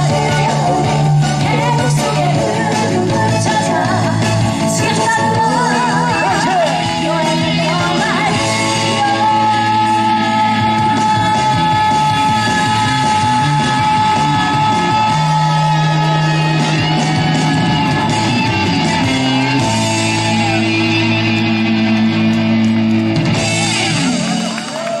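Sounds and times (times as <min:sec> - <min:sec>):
person singing through pa: 0:00.0 - 0:17.9
amplified band backing track: 0:00.0 - 0:25.0.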